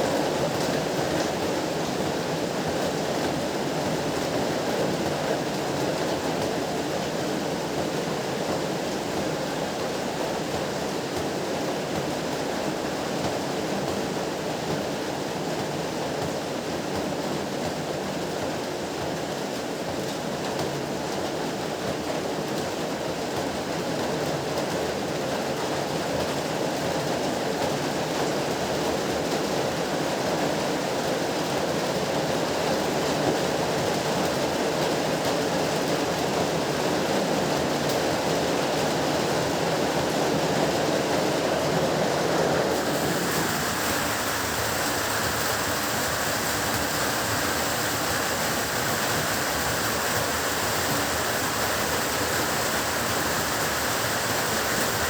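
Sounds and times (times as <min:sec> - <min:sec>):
heavy rain pouring: 0:34.8 - 0:55.0.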